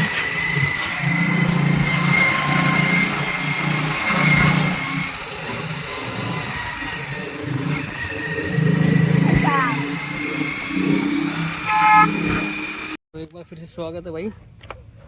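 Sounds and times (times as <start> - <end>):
small motor whining: 0.0 - 13.0.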